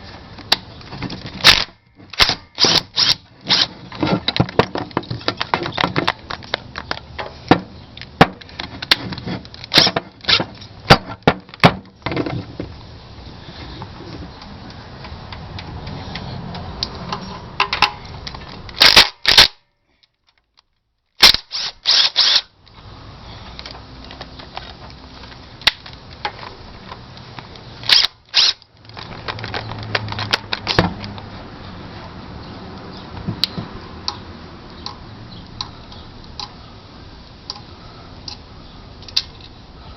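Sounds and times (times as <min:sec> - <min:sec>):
metal tools clanking on engine parts: 0:17.1 - 0:18.6.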